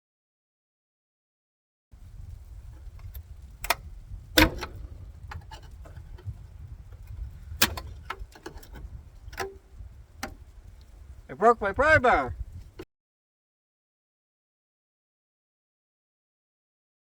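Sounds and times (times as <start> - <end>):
metal clanks and knocks: 2.6 - 10.5.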